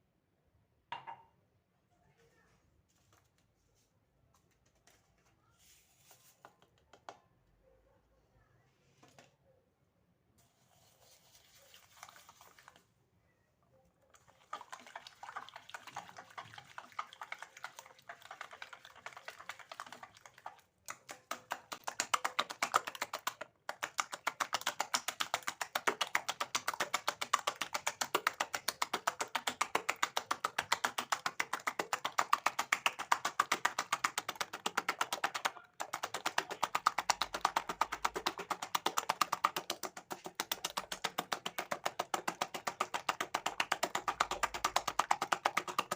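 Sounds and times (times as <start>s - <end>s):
utensil beating batter in bowl: 14.1s - 45.9s.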